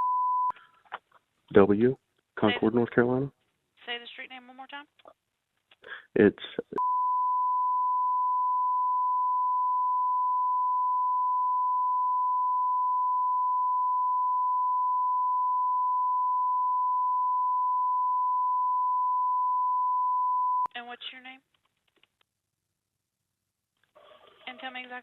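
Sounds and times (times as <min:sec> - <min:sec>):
censor bleep tone: 0:00.0 - 0:00.5, 0:06.8 - 0:20.7.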